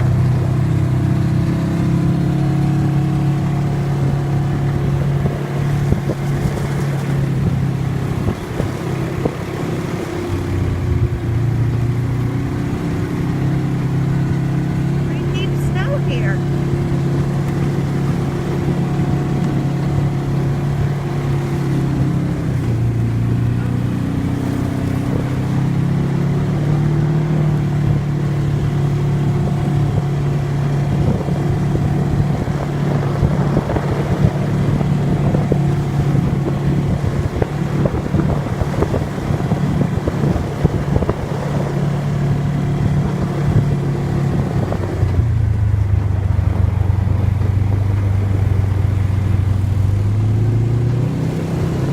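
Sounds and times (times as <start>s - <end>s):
atv engine running: 0.0s - 51.9s
wind: 0.0s - 51.9s
rough rumbling noise: 44.6s - 51.2s.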